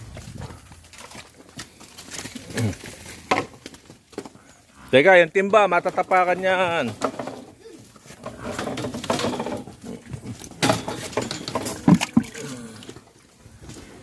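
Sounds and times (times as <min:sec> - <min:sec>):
squelching hoof steps in mud: 0:00.0 - 0:04.8.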